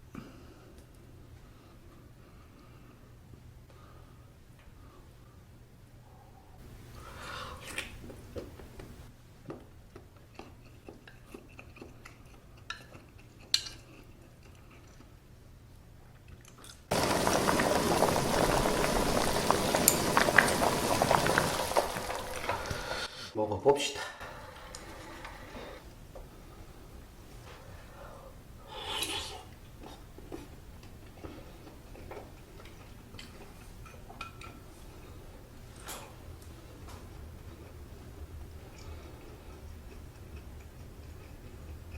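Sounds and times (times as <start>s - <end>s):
soft eating noises: 6.0s - 17.0s, 24.2s - 41.9s
loud slurp: 28.7s - 30.1s.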